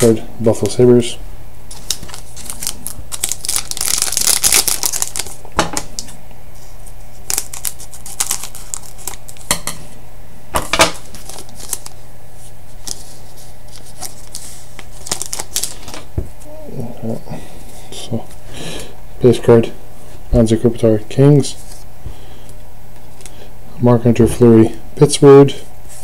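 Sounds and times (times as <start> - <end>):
electrical hum: 0.0 - 26.0
cards sliding rustle: 11.0 - 16.1.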